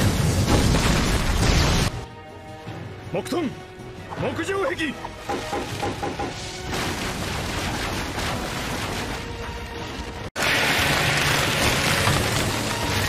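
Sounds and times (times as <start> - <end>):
music: 0.7 - 13.0
crackling rush of growing timber: 6.7 - 13.0.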